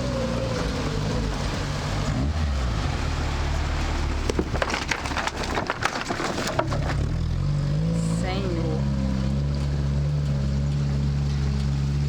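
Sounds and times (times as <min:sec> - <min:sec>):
car engine at low revs: 0:00.0 - 0:05.6, 0:06.4 - 0:12.0
clattering knocks and rattles: 0:04.2 - 0:07.6.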